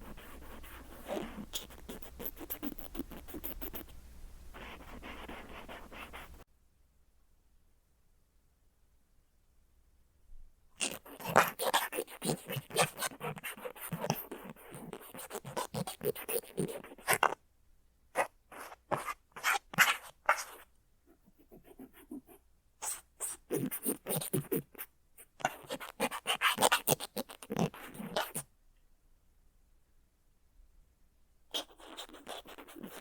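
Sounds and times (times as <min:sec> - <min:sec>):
cotton swab scratching on plastic: 0:00.0 - 0:06.4, 0:10.8 - 0:17.4, 0:18.2 - 0:28.5, 0:31.5 - 0:33.0.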